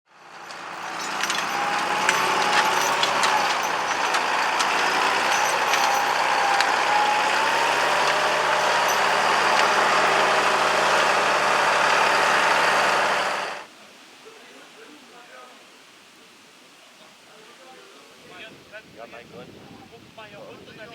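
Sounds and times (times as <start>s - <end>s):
tractor engine running: 0.1s - 13.7s.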